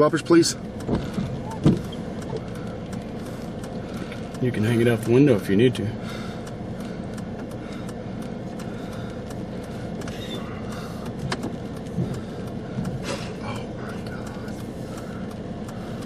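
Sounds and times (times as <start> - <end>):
light clicks and knocks: 0.7 - 5.8, 6.4 - 16.0.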